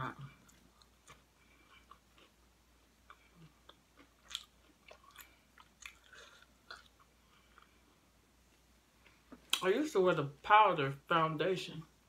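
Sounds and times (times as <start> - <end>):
chewing crunchy chips: 3.0 - 7.8.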